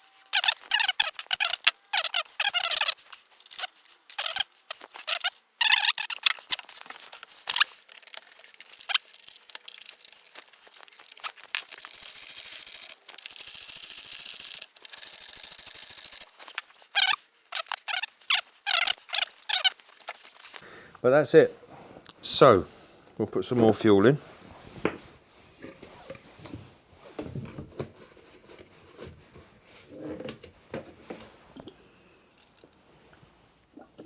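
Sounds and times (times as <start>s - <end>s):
high-pitched squeaky chirps: 0.0s - 6.7s, 16.8s - 20.5s.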